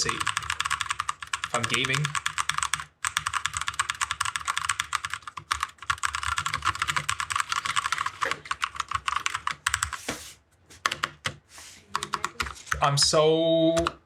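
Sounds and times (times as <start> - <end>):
mechanical keyboard keys clicking: 0.0 - 9.9.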